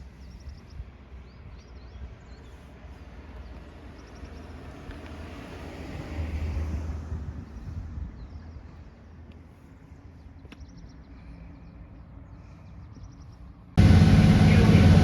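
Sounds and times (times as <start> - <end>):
vehicle passing by: 4.5 - 7.4, 13.8 - 15.0.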